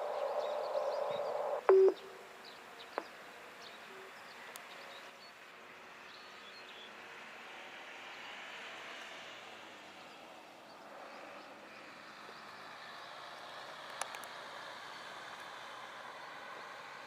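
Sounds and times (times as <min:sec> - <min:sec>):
small high chirps: 0:00.0 - 0:02.2
click: 0:13.9 - 0:14.3.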